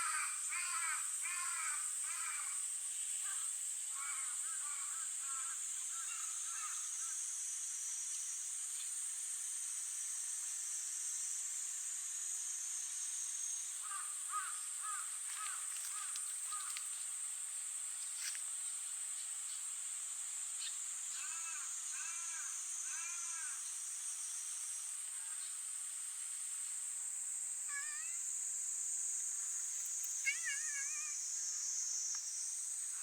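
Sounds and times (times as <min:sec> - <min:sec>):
high-pitched hiss: 0:00.0 - 0:33.0
bird calling: 0:30.2 - 0:31.2.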